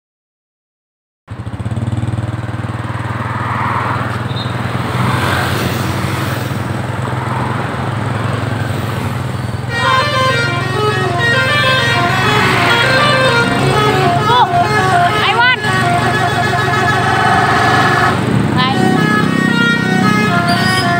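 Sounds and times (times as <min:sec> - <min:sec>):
bus engine humming: 0:01.3 - 0:20.9
air horn playing tune: 0:09.7 - 0:20.9.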